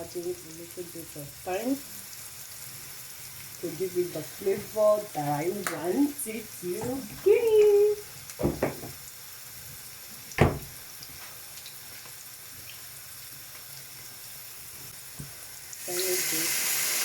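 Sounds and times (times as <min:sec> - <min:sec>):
faint hiss of cooking: 0:00.0 - 0:17.0
utensil knocking on cookware: 0:08.4 - 0:09.0.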